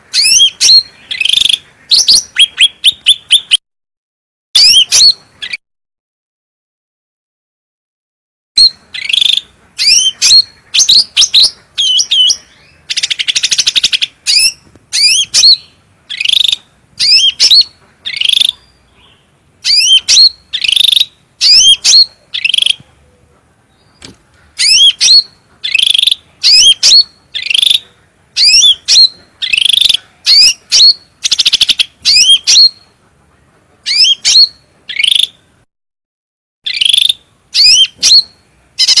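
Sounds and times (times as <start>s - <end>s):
songbird whistling: 4.6s - 5.6s, 8.6s - 22.8s, 24.6s - 27.8s, 28.4s - 33.0s, 33.9s - 35.4s, 36.7s - 39.0s.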